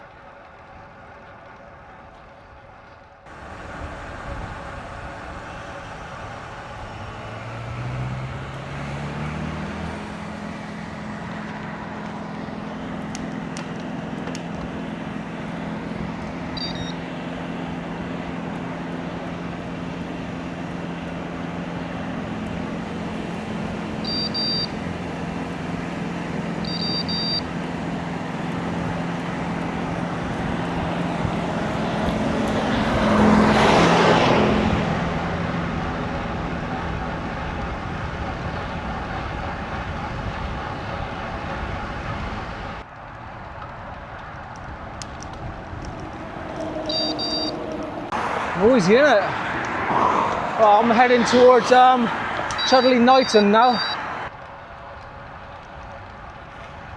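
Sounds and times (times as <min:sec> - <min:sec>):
motor vehicle passing: 0:00.0 - 0:56.9
road bike riding hum: 0:00.0 - 0:56.9
short electronic beeps: 0:16.5 - 0:17.0, 0:24.0 - 0:24.7, 0:26.6 - 0:27.5, 0:46.9 - 0:47.6, 0:52.6 - 0:54.1.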